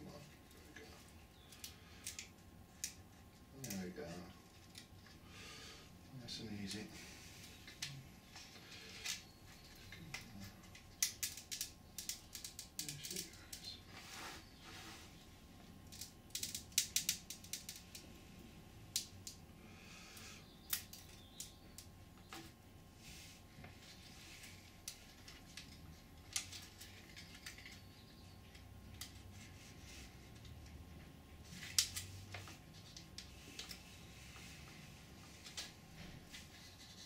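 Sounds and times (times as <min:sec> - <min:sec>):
foam clicks snaps and crackles: 0:10.1 - 0:13.7, 0:15.8 - 0:18.1, 0:18.9 - 0:19.4, 0:20.6 - 0:21.9.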